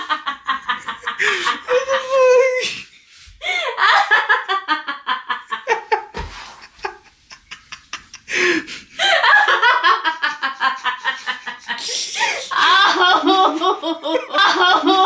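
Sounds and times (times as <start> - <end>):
person laughing uncontrollably: 0.0 - 2.6, 3.6 - 15.0.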